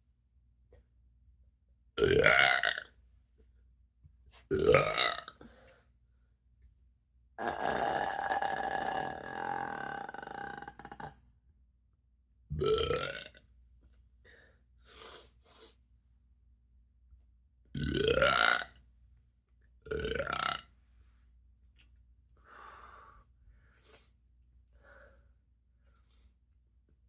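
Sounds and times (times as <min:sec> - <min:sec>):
burps: 0:02.0 - 0:03.0, 0:04.5 - 0:05.4, 0:07.4 - 0:11.2, 0:12.5 - 0:13.4, 0:17.7 - 0:18.8, 0:19.9 - 0:20.7.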